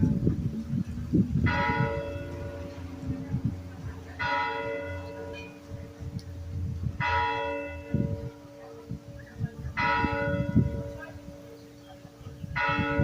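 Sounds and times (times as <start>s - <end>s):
church bell tolling: 1.5s - 6.0s, 7.0s - 9.1s, 9.7s - 11.6s, 12.6s - 13.0s.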